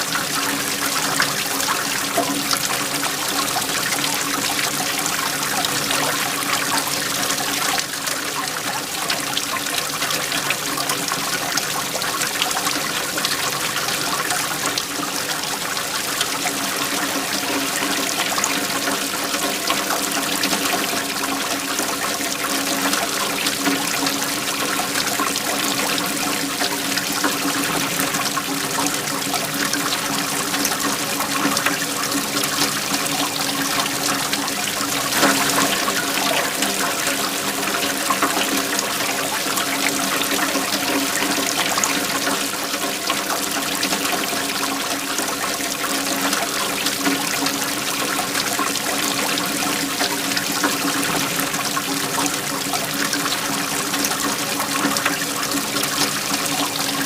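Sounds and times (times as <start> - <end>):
waterfall rushing: 27.5 - 42.3.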